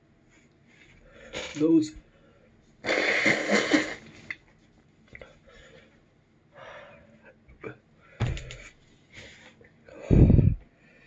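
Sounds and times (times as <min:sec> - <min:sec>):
man breathing softly: 0:08.0 - 0:11.0.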